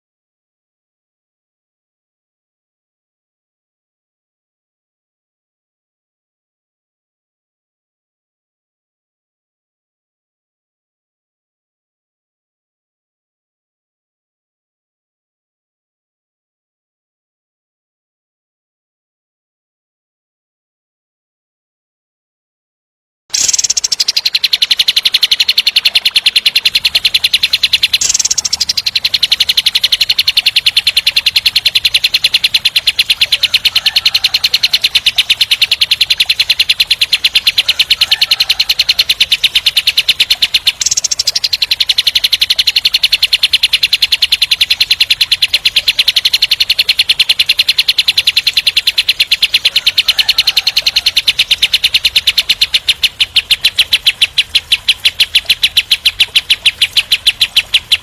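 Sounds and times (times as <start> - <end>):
bird singing rapid harsh trill: 23.3 - 58.0.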